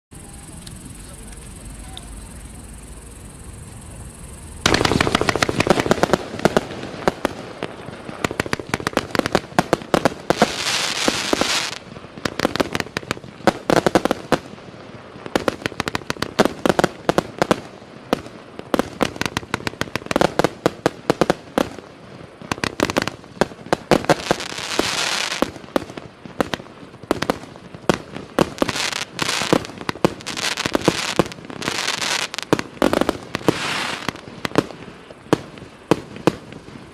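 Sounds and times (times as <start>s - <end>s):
firework crackle: 0.1s - 36.9s
firework launch thumps and bursts: 4.6s - 14.4s.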